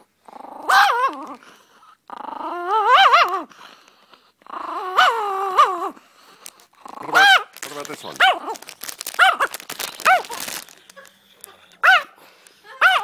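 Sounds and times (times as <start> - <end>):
small dog growling and whining: 0.0 - 3.8, 4.4 - 6.0, 6.8 - 7.4.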